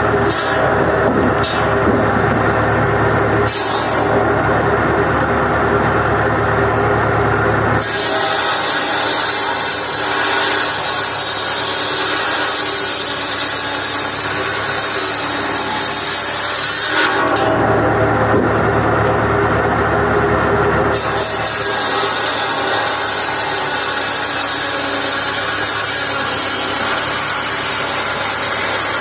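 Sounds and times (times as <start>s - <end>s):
tractor engine running: 0.0s - 7.8s, 17.4s - 21.5s
circular saw cutting firewood: 0.0s - 29.0s.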